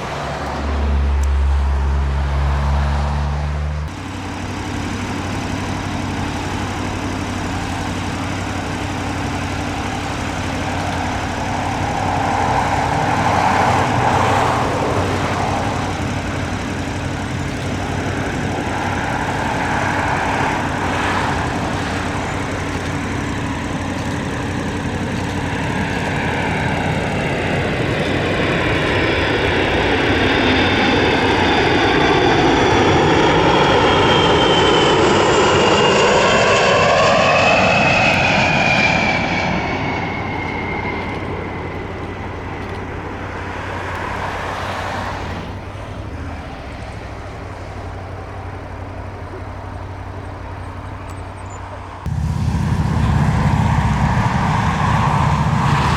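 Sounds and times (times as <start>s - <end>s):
aircraft engine passing by: 0.0s - 55.9s
high whine falling in pitch: 52.0s - 55.9s
steady low hum: 52.0s - 55.9s.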